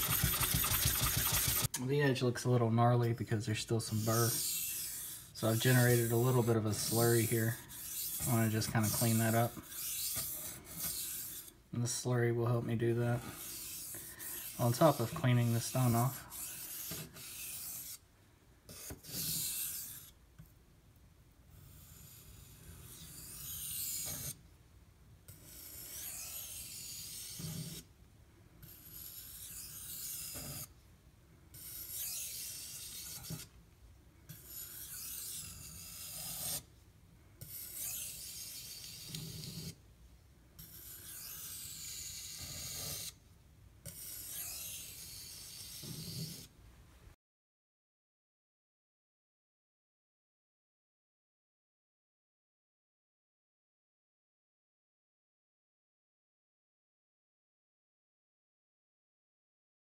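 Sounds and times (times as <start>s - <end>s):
knife rasping on sharpening stone: 4.0s - 11.5s, 13.2s - 18.0s, 18.7s - 20.1s, 21.7s - 24.4s, 25.3s - 27.8s, 28.6s - 30.7s, 31.6s - 33.5s, 34.3s - 36.6s, 37.4s - 39.8s, 40.6s - 43.2s, 43.9s - 46.5s.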